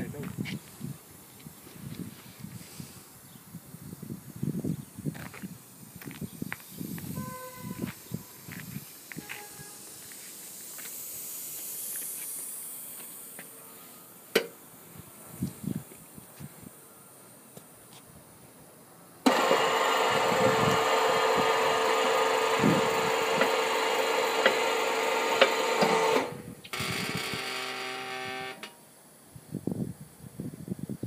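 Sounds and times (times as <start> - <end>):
hydraulic pump motor running: 19.2 - 28.7.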